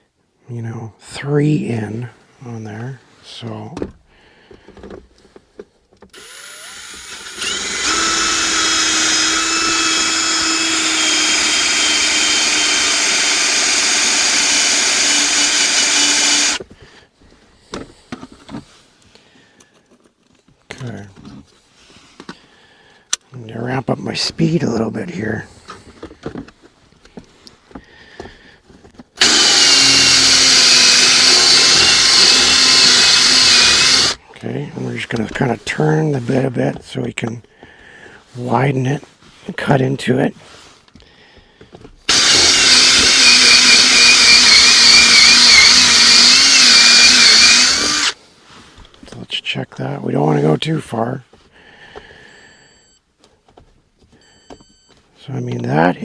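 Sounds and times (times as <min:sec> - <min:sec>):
electric drill spinning: 0:06.1 - 0:16.6, 0:29.2 - 0:34.2, 0:42.1 - 0:48.2.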